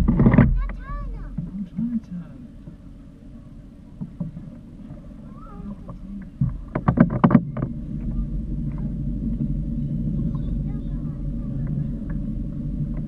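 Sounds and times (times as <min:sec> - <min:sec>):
sharp knocks: 0:00.0 - 0:01.5
boat motor droning: 0:00.0 - 0:13.0.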